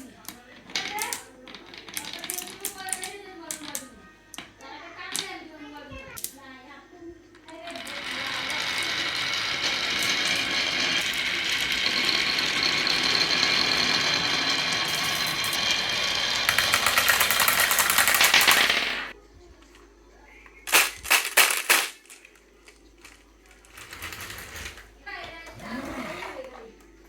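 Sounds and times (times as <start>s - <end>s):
marbles rattling down track: 0.0s - 4.5s, 7.5s - 19.2s, 20.7s - 22.3s, 23.0s - 24.9s.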